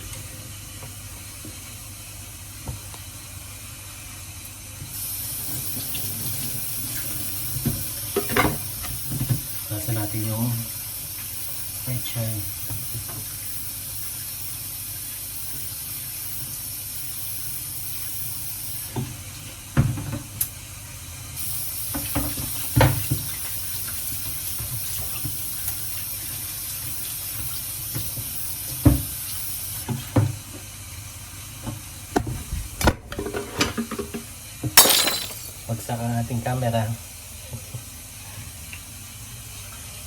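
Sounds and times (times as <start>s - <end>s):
tap running water into sink: 22.0s - 25.8s.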